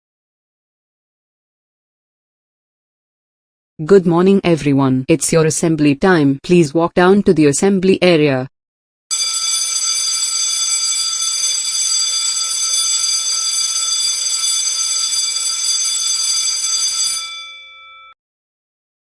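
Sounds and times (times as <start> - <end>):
electric school bell ringing: 9.1 - 18.2.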